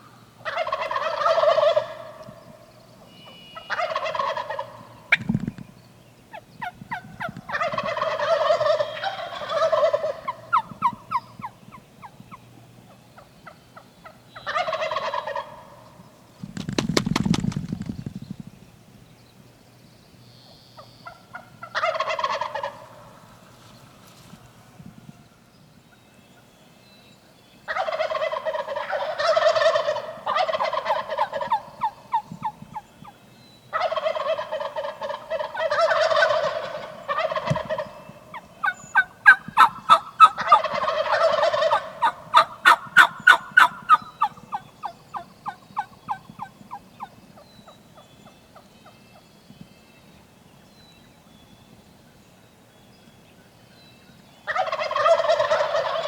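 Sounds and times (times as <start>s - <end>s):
sharp turkey calls: 0.0s - 5.6s, 6.3s - 18.1s, 20.8s - 23.3s, 27.7s - 49.0s, 54.4s - 56.0s
turkey gobbling: 0.4s - 2.4s, 3.5s - 5.5s, 6.3s - 12.4s, 13.2s - 15.9s, 20.8s - 23.2s, 27.7s - 32.8s, 33.7s - 47.1s, 54.5s - 56.0s.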